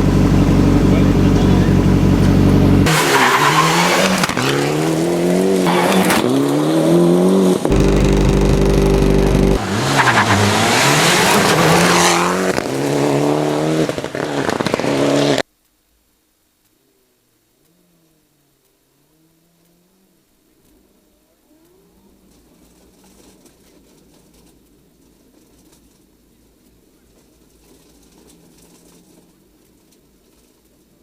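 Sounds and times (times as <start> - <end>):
rally car engine revving: 0.0 - 15.4.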